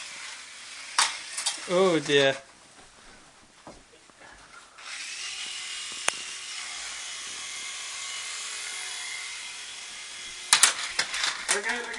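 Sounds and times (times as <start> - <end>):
toy helicopter motor whirring: 0.0 - 2.1, 4.8 - 11.9.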